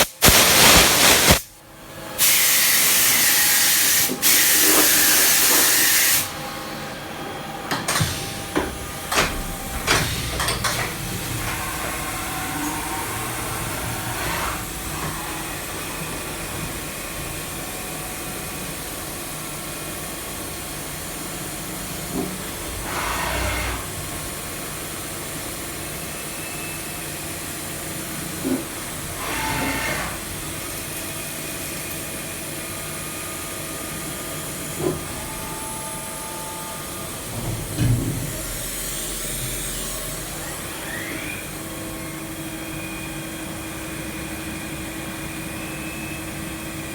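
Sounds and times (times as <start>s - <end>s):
short hissing bursts: 0.0s - 1.6s
milling machine running: 2.3s - 46.9s.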